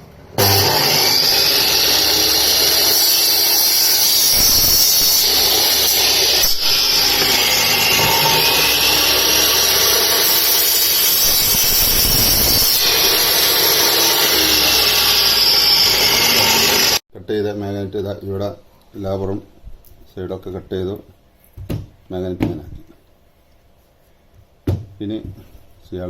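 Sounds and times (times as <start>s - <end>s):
power cutter cutting metal: 0.4s - 17.0s.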